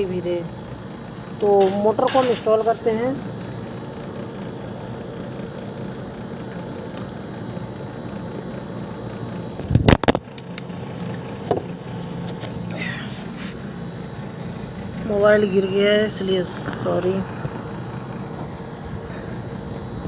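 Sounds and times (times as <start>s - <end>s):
low background hum: 0.0s - 20.0s.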